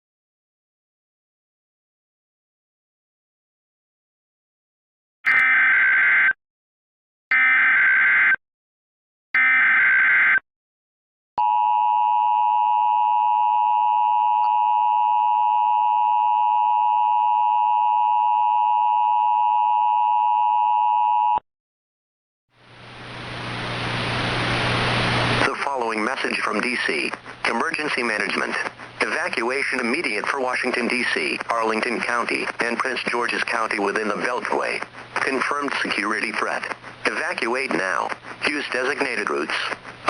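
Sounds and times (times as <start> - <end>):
hiss with low hum: 22.6 - 30.2.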